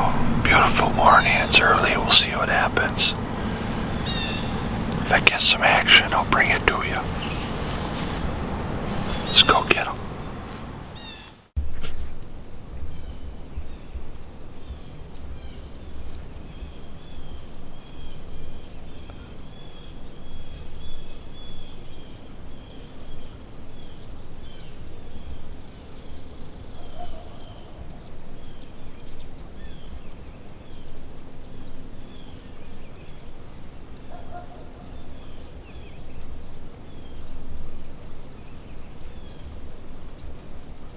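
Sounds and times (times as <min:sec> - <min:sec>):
buzzy bird call: 0:00.0 - 0:11.3
small birds chirping: 0:00.0 - 0:11.5.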